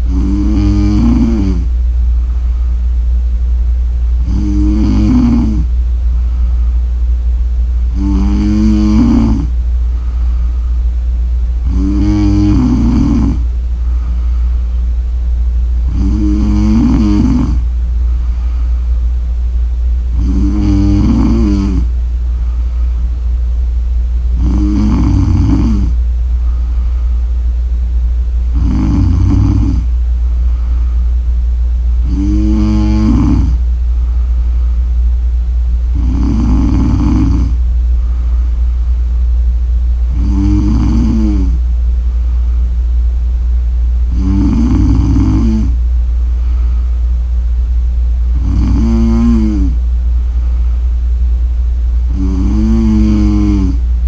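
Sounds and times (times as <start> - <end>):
woman snoring: 0.0 - 1.7, 4.2 - 5.7, 7.9 - 9.6, 11.6 - 14.2, 15.8 - 17.7, 20.1 - 21.9, 24.3 - 26.0, 28.5 - 29.9, 32.0 - 33.7, 35.9 - 37.6, 40.1 - 41.6, 44.1 - 45.8, 48.3 - 49.8, 52.1 - 53.9
steady low hum: 0.0 - 54.0.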